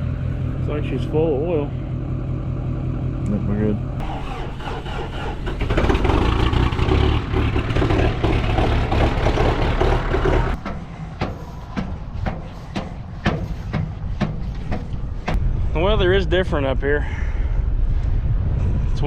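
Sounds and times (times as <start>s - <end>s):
diesel engine running: 0.0s - 15.4s.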